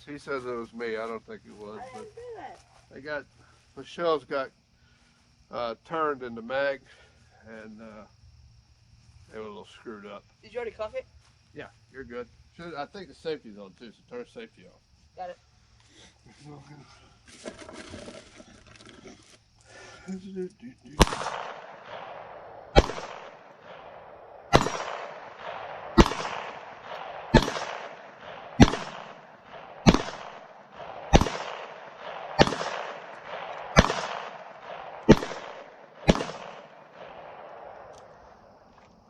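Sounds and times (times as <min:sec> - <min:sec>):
pistol shots ringing: 0:20.9 - 0:38.2.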